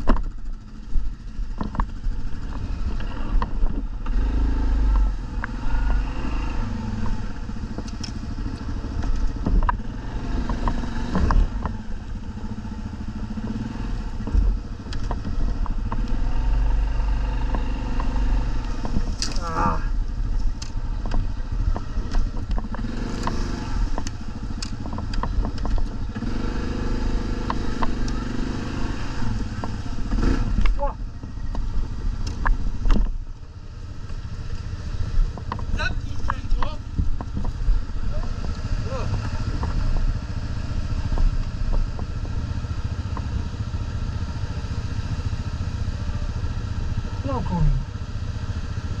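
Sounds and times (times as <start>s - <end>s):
sharp clicks and knocks: 0.0s - 4.2s, 7.0s - 12.3s, 14.2s - 16.2s, 17.4s - 19.4s, 20.3s - 26.3s, 27.3s - 28.2s, 29.2s - 43.6s
quad engine running: 0.0s - 49.0s.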